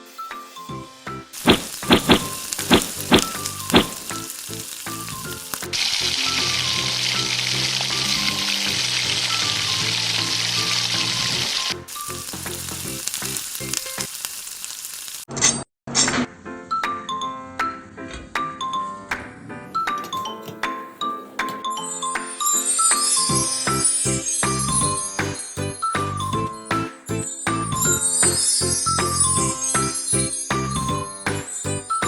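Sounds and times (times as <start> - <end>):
light background music: 0.0 - 13.2, 16.1 - 32.0
patties sizzling in hot oil: 0.0 - 15.3, 22.3 - 26.5, 27.1 - 32.0
sharp knocks: 1.5 - 4.1.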